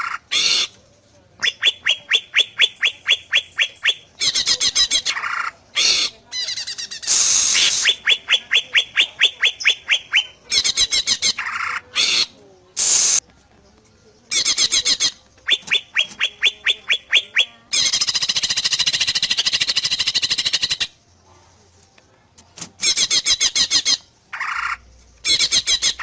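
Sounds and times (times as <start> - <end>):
bird chattering and rasping: 0.0 - 0.8, 1.4 - 13.2, 14.3 - 21.0, 22.8 - 26.0
bird whistling song: 1.4 - 5.0, 6.5 - 11.4, 14.3 - 20.9.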